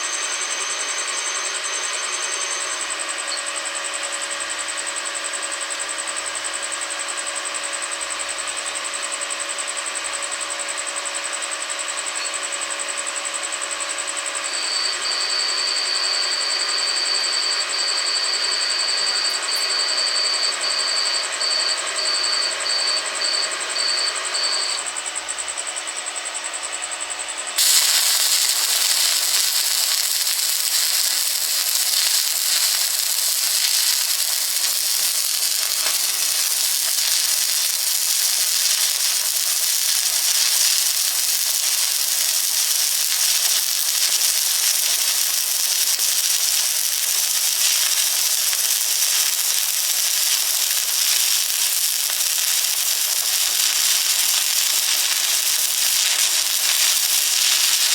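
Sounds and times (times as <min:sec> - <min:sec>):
welding arc crackling: 0:14.5 - 0:21.0, 0:27.6 - 0:57.9.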